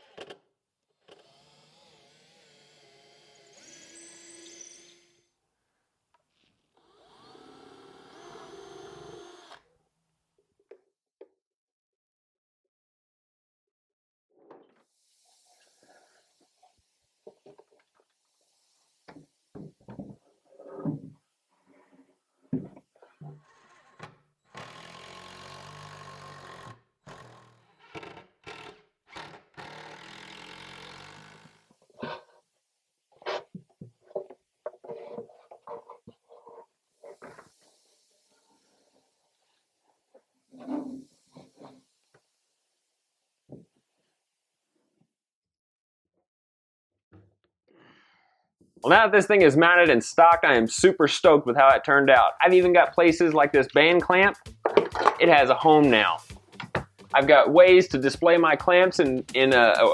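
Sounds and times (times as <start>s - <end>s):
power tool motor whining: 24.5s - 27.6s
power driver driving screws: 24.5s - 31.6s.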